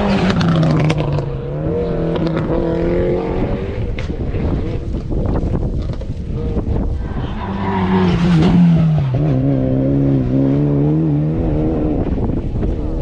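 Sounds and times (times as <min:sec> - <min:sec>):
racing car engine passing: 0:06.3 - 0:12.4.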